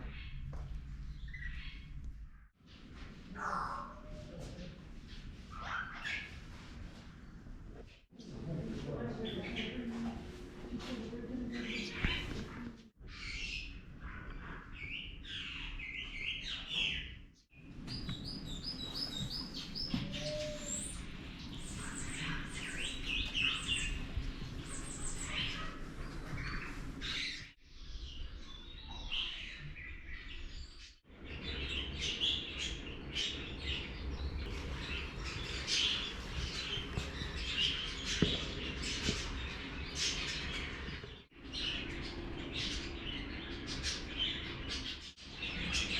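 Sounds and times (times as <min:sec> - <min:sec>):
small birds chirping: 0:00.0 - 0:07.5, 0:10.9 - 0:45.9.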